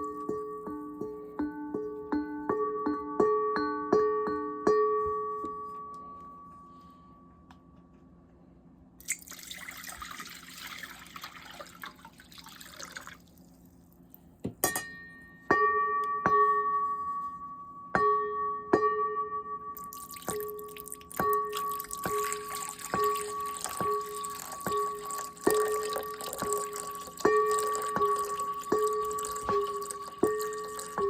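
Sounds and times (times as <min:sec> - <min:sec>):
water pouring: 0:09.0 - 0:13.7, 0:19.8 - 0:31.0
metal bowl ringing: 0:18.0 - 0:31.0.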